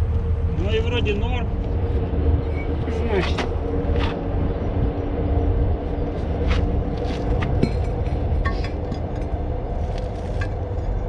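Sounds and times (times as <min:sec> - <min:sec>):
low mechanical rumble: 0:00.0 - 0:11.0.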